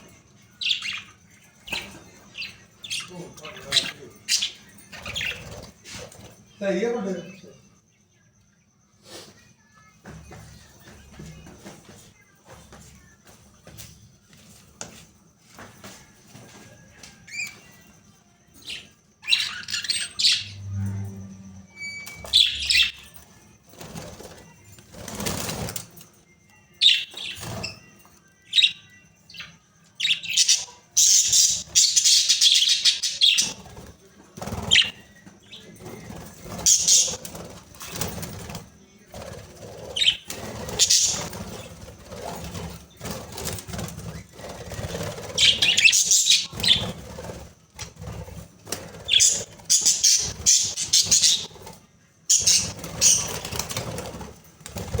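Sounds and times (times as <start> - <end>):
budgerigars chirping and chattering: 0.0 - 7.5, 18.6 - 20.6, 21.8 - 23.2, 26.8 - 27.8, 28.5 - 55.0.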